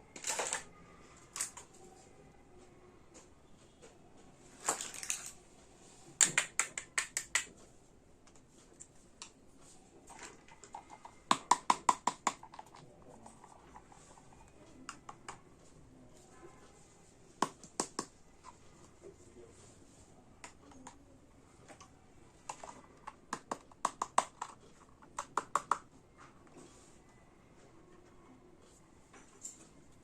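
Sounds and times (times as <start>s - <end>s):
plastic toy pieces clicking: 0.2s - 0.7s, 4.6s - 5.4s.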